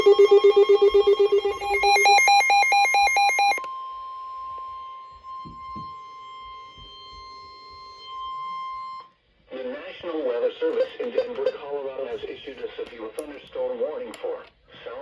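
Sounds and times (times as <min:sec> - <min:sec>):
pulsing warble of beeps: 0:00.0 - 0:03.6
steady alarm tone: 0:00.0 - 0:09.2.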